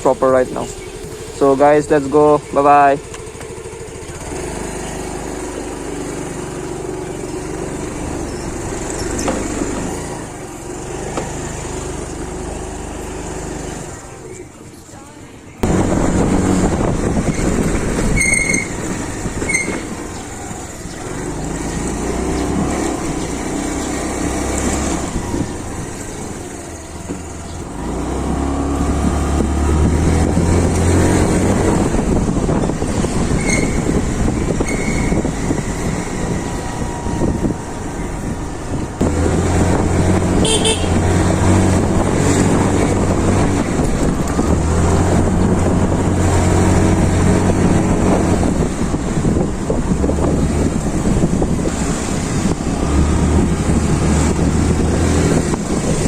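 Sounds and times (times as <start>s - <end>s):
scooter engine running: 0.0s - 56.0s
wind noise on microphone: 15.6s - 56.0s
horn toots: 40.2s - 41.6s.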